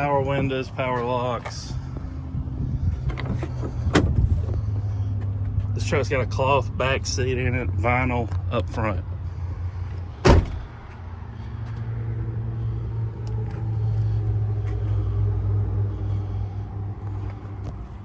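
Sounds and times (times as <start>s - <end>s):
truck door slamming: 3.2s - 4.4s, 10.2s - 10.8s.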